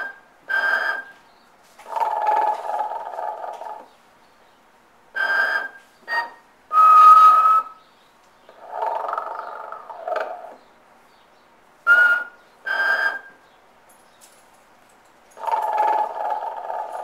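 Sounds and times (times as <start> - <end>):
whistled out-breaths: 5.2 - 7.8, 11.9 - 13.4.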